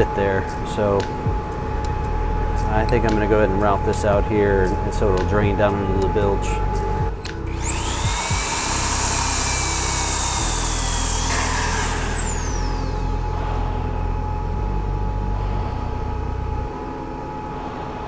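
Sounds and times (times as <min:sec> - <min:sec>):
belt sander whining: 0:00.0 - 0:14.9.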